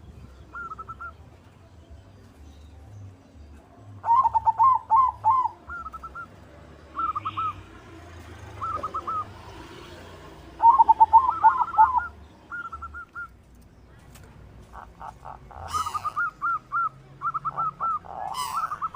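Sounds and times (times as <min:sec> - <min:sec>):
dove cooing: 0:00.5 - 0:01.2, 0:04.0 - 0:06.3, 0:06.9 - 0:07.7, 0:08.3 - 0:09.7, 0:10.5 - 0:13.3, 0:14.7 - 0:18.9.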